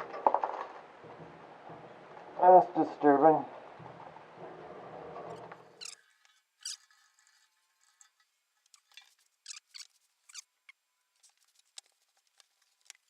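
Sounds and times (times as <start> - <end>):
metal tank clicks and scrapes: 3.6 - 9.2.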